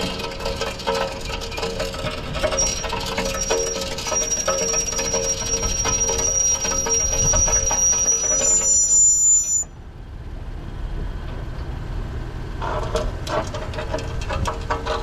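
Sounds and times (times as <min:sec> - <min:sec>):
brake scraping and grinding: 0:00.0 - 0:09.7, 0:12.5 - 0:15.0
brake squeal: 0:00.0 - 0:09.8
low road rumble: 0:00.0 - 0:15.0.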